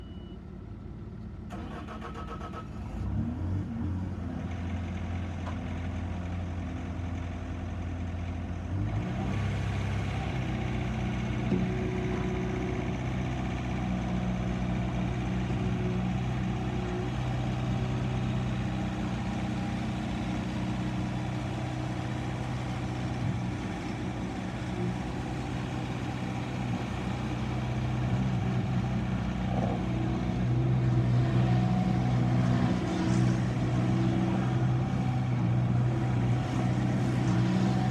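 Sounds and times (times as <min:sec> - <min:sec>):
diesel engine idling and revving: 0:00.0 - 0:37.9.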